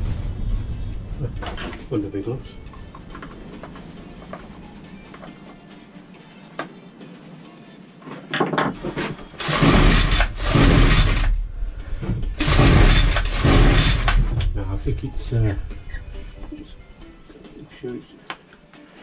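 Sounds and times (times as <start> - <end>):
engine turning over: 9.4 - 14.6.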